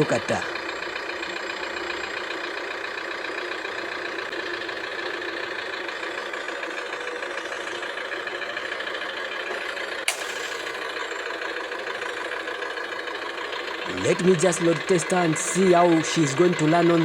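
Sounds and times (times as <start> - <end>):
car engine idling: 0.0 - 17.0
sharp click: 10.1 - 10.9.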